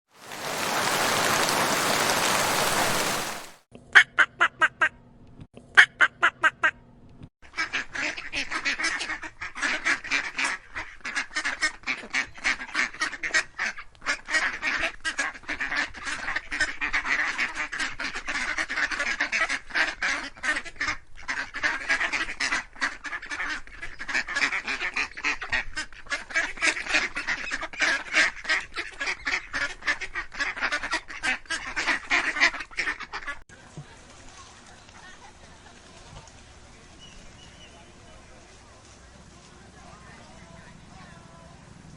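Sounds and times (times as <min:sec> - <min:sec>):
ducks quacking: 0:07.5 - 0:33.4.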